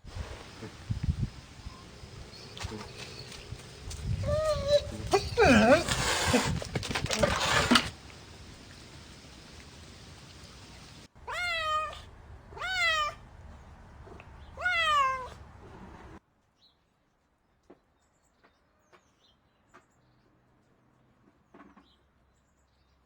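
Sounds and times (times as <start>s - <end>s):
cat meowing: 11.2s - 13.2s, 14.1s - 15.4s.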